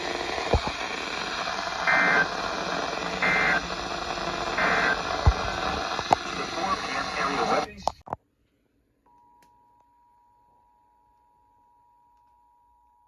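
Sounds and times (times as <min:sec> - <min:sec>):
buzzy data tone bursts: 0:00.0 - 0:08.0
radio static hiss: 0:00.0 - 0:08.0.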